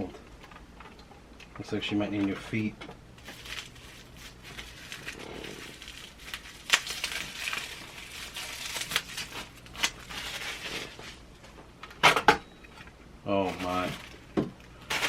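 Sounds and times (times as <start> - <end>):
crinkling rustle: 2.4 - 11.5, 13.3 - 15.0.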